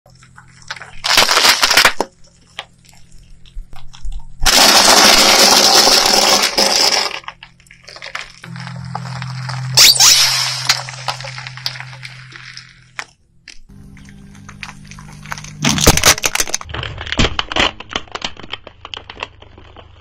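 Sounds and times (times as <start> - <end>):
low steady hum: 0.1 - 17.4
objects cracking and crunching: 0.1 - 20.0.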